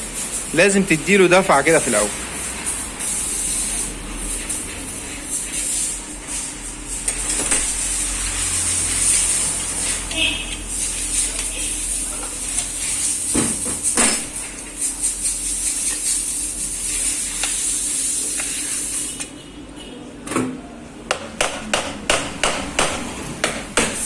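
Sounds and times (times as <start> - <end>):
steady hiss: 0.0 - 19.2.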